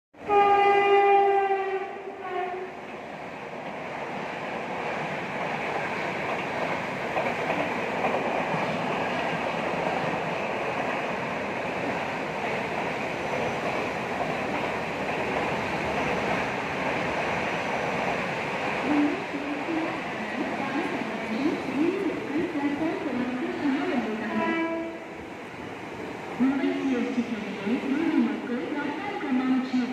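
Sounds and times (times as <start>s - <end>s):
train horn: 0.2s - 2.8s, 24.2s - 25.0s
moving train running noise: 0.4s - 29.9s.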